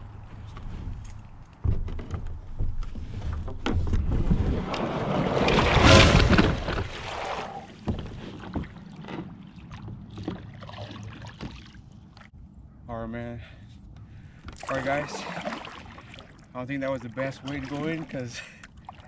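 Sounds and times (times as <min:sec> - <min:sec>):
kayak knocking and scraping: 0:00.2 - 0:12.3, 0:14.4 - 0:16.2, 0:16.8 - 0:19.0
water splashing: 0:04.6 - 0:12.3, 0:14.5 - 0:19.0.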